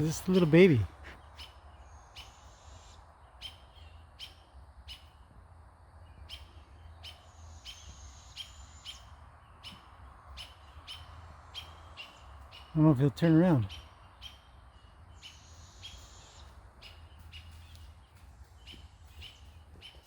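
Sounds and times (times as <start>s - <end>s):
bird chirping: 0.0s - 20.0s.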